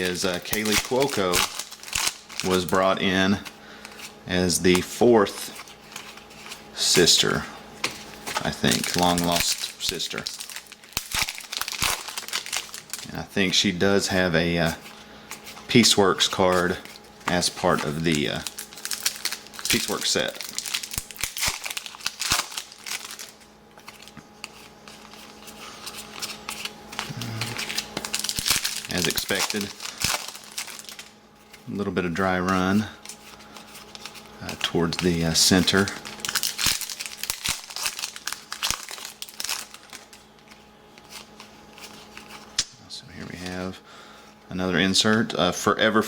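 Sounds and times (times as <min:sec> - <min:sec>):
trading cards rustling: 0:00.0 - 0:42.6.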